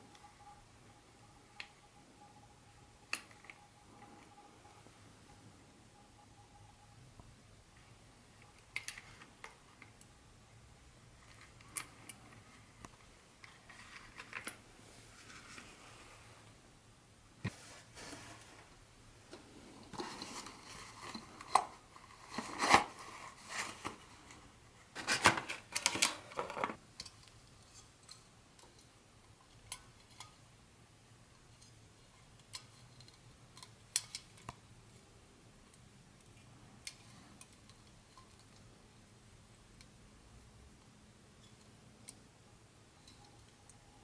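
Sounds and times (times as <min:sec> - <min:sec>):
hands handling small items: 0:17.4 - 0:27.4.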